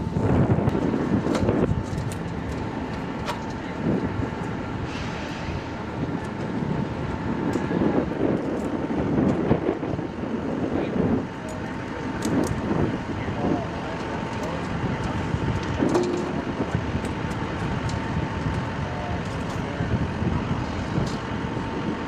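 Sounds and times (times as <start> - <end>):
jet engine rumble with whine: 0.0 - 22.0.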